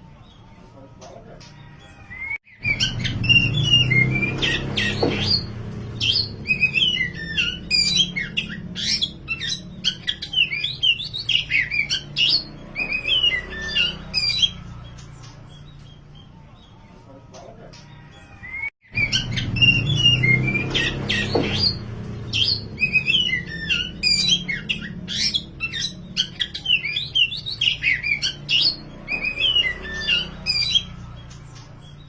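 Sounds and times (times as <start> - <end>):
bird singing whistled song: 2.1 - 14.6, 18.5 - 30.9.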